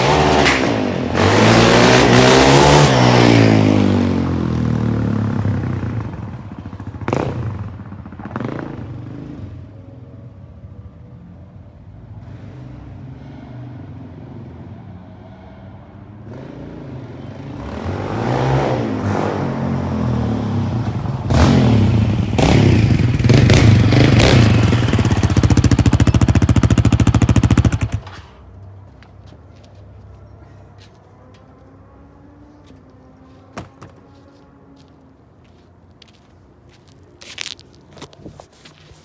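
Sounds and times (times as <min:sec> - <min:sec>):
motorcycle engine revving: 0:00.0 - 0:09.8, 0:16.3 - 0:28.4.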